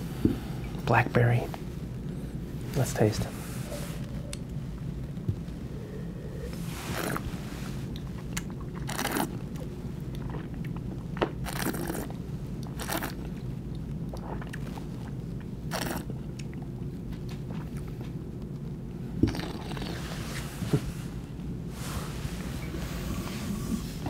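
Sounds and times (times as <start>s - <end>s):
low steady hum: 0.0s - 24.0s
wine slurping: 6.0s - 10.8s, 11.4s - 13.4s, 14.1s - 16.1s, 19.2s - 20.4s.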